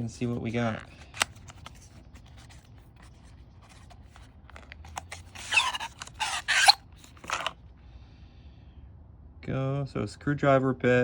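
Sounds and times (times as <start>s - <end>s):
packaging scraping and rustling: 0.0s - 7.6s.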